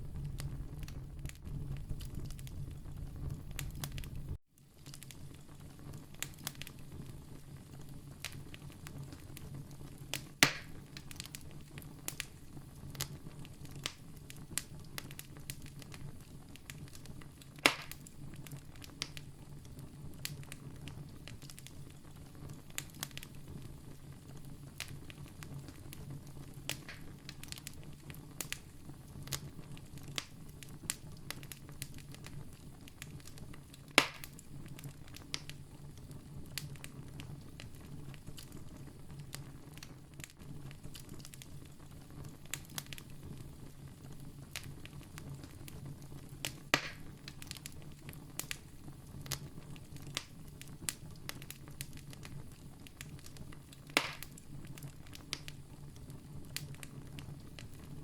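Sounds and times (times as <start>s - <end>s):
low rumble: 0.0s - 4.4s
campfire crackling: 0.0s - 58.0s.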